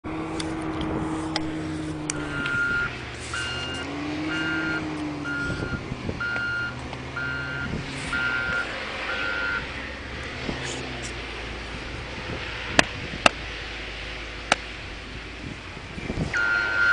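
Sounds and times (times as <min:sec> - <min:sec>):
heavy vehicle engine: 0:00.0 - 0:16.9
reversing alarm beeping: 0:02.1 - 0:09.7, 0:16.3 - 0:16.9.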